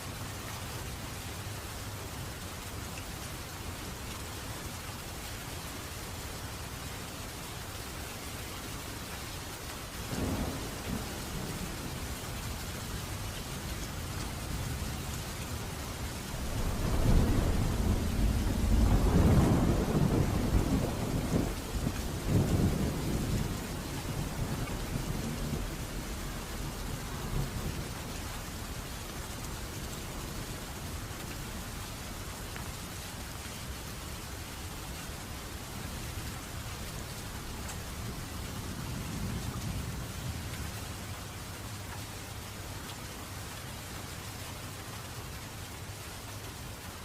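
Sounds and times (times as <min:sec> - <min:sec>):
steady rain: 0:00.0 - 0:47.0
rolling thunder: 0:10.2 - 0:12.0, 0:16.2 - 0:28.0.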